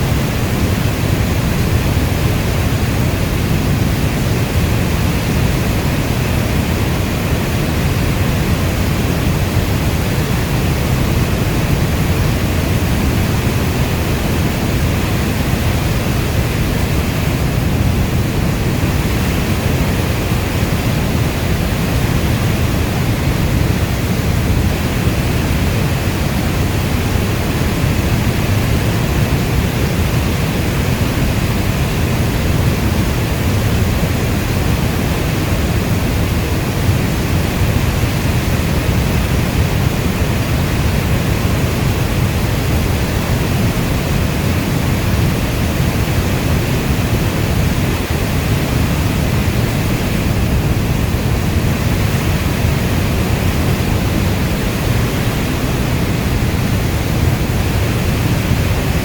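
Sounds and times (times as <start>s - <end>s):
heavy rainfall: 0.0s - 59.0s.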